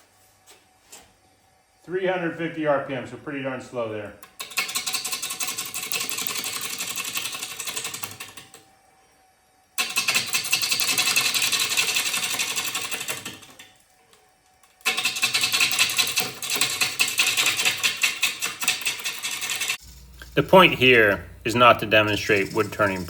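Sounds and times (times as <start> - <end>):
lathe tool cutting wood: 18.8 - 23.0.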